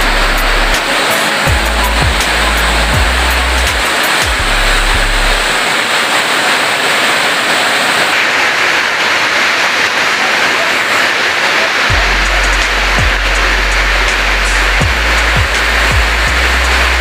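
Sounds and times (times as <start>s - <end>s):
low bass tone: 0.0s - 5.5s, 11.9s - 17.0s
heavy rain pouring: 0.0s - 17.0s.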